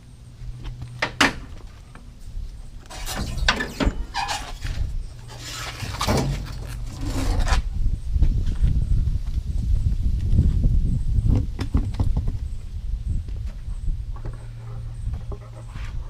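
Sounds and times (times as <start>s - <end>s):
spare tire knocks and scraping: 2.8s - 7.7s, 11.3s - 12.5s.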